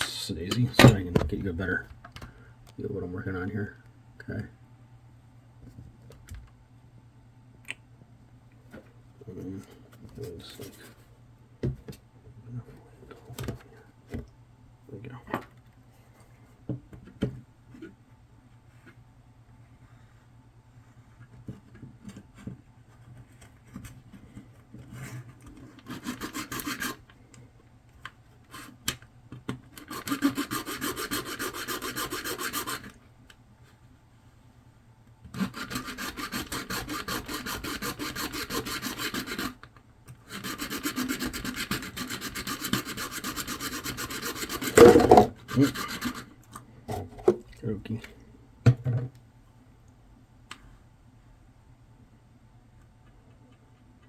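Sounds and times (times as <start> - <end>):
plastic casing being scraped: 23.3 - 27.0, 40.2 - 46.3.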